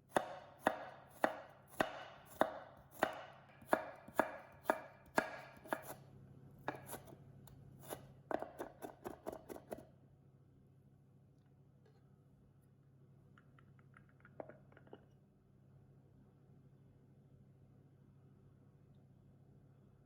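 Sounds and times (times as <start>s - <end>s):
knife chopping on cutting board: 0.1s - 6.0s, 6.6s - 7.2s, 7.8s - 9.8s.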